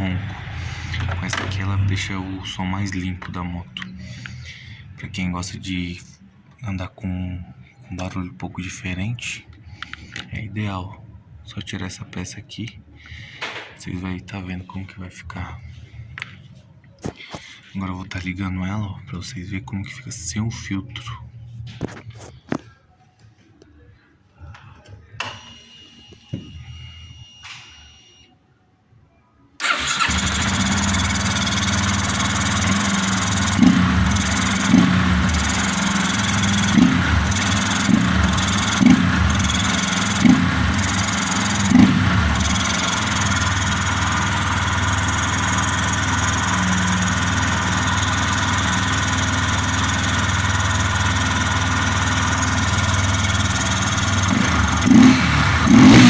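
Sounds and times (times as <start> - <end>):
motorcycle engine revving and idling: 29.6 - 56.0.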